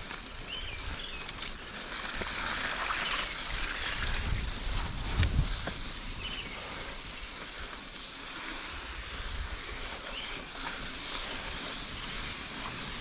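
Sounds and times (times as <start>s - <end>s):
bike tyres rolling on dirt: 0.0s - 13.0s
wind on microphone: 3.1s - 7.8s, 8.4s - 13.0s.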